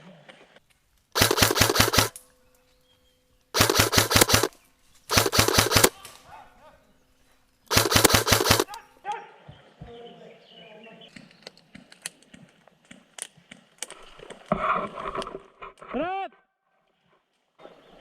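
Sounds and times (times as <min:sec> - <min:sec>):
airsoft rifle full-auto bursts: 0:01.2 - 0:02.2, 0:03.5 - 0:06.0, 0:07.7 - 0:08.8.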